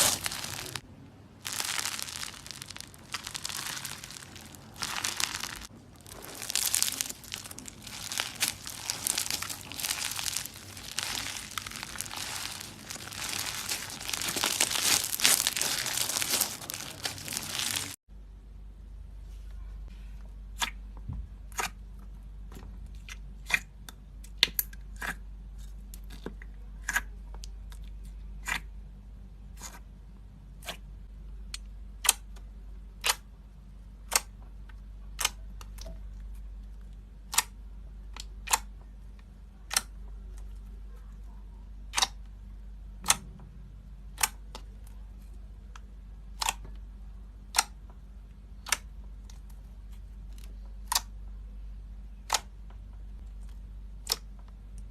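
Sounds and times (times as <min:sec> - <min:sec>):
slime squeezed with bubble pops: 0:00.0 - 0:00.8, 0:01.5 - 0:18.0.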